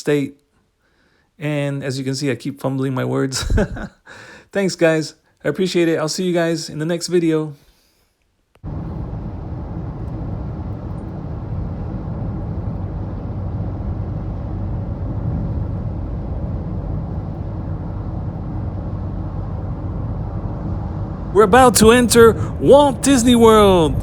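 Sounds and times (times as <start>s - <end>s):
road noise inside car: 8.6s - 24.0s
car engine hum: 8.7s - 24.0s.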